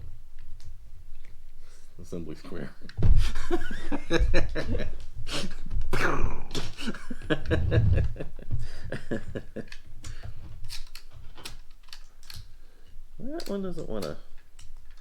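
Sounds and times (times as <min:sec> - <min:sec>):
plastic bricks clicking: 0:09.6 - 0:12.5, 0:13.4 - 0:15.0.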